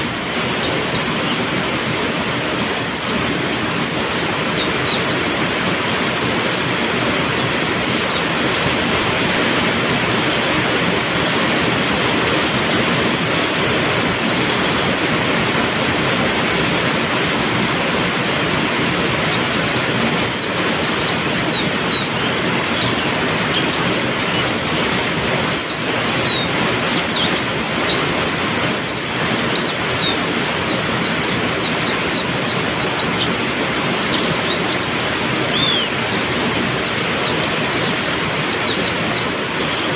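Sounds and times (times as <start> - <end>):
bird twittering: 0.0 - 5.3, 7.3 - 9.1, 14.1 - 15.0, 19.2 - 39.9
heavy rain pouring: 0.0 - 39.9.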